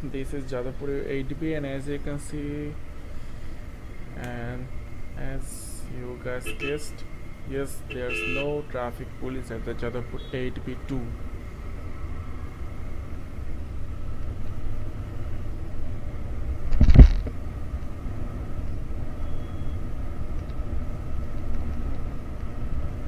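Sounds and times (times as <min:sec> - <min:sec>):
faint whine tones: 0:00.0 - 0:20.9
motorcycle engine rumble: 0:00.0 - 0:23.0.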